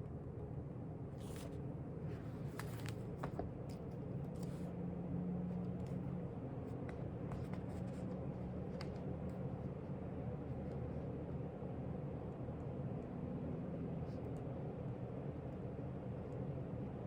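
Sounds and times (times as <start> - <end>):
low background hum: 0.0 - 17.0
book pages turning: 1.2 - 4.7, 6.8 - 9.1.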